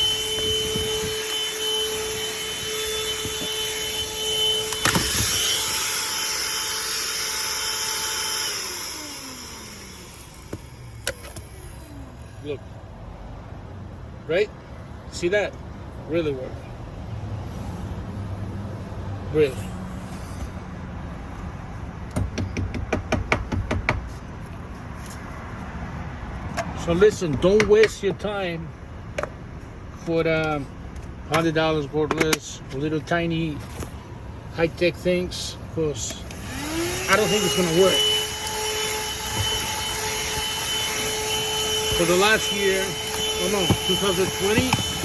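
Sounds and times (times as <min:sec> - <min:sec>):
handheld vacuum whining: 0:00.0 - 0:12.4, 0:35.3 - 0:45.0
vacuum motor spinning down: 0:00.0 - 0:12.4, 0:36.3 - 0:45.0.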